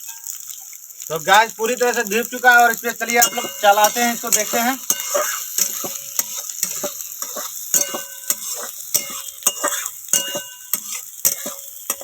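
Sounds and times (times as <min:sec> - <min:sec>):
vegetables sizzling in hot oil: 0:00.0 - 0:12.0
utensil scraping metal pan: 0:03.0 - 0:12.0.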